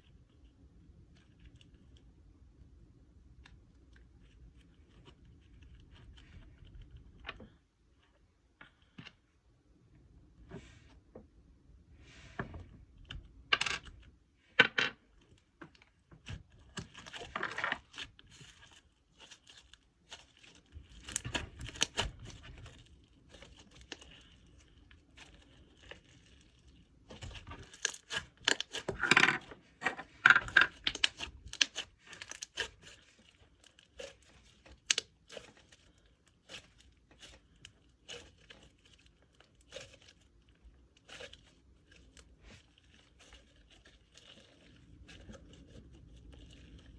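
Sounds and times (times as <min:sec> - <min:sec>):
slime being kneaded by hand: 0:16.2 - 0:46.9.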